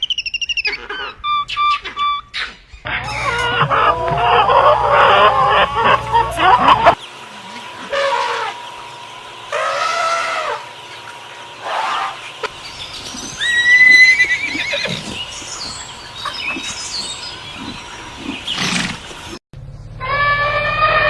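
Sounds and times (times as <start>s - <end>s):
horse neighing: 13.4s - 15.2s.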